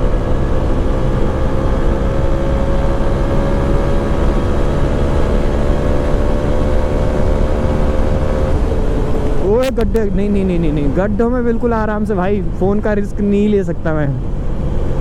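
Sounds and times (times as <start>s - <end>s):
motorcycle engine at high revs: 0.0s - 9.9s.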